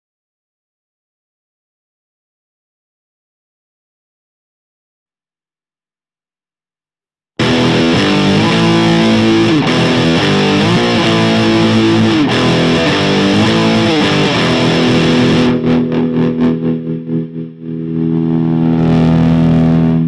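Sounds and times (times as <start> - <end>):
distorted electric guitar: 7.4 - 20.0.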